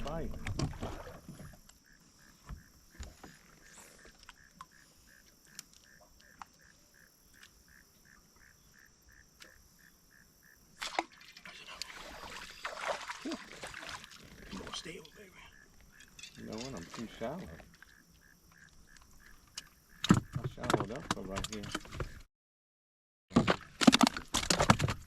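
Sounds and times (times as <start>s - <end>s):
water-like noise: 0.0s - 2.0s, 10.4s - 20.0s.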